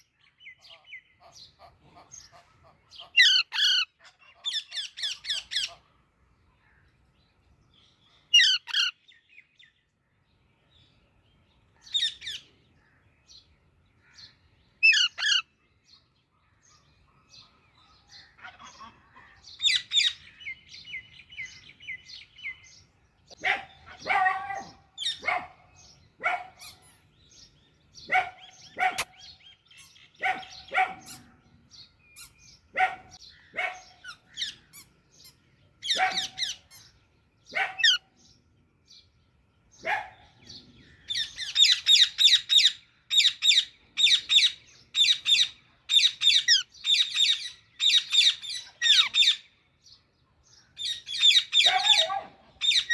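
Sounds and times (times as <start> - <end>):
parakeet squawking: 3.0 - 5.8, 8.4 - 8.9, 14.8 - 15.4, 37.8 - 38.0, 41.2 - 49.4.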